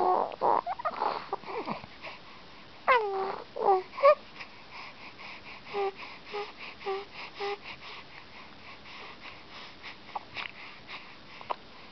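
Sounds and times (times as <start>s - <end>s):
infant cooing: 0.0s - 1.8s, 2.9s - 4.2s.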